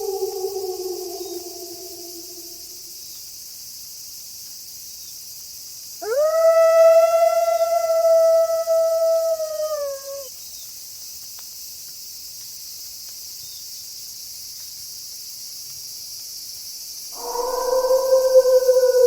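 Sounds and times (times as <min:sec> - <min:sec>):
wolf howling: 0:00.0 - 0:02.9, 0:06.0 - 0:10.3, 0:17.2 - 0:19.0
crickets chirping at night: 0:00.0 - 0:19.0.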